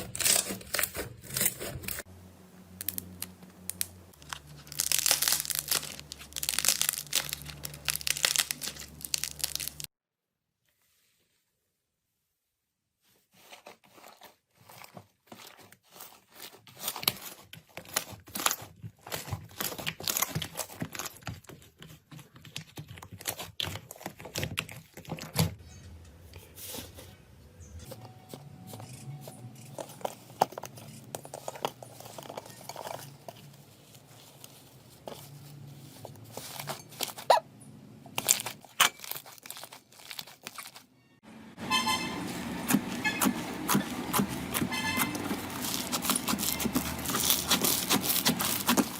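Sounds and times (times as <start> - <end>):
slime crackling and popping: 2.8 - 9.9, 43.6 - 48.9
slime squishing: 2.8 - 9.9, 42.6 - 48.9.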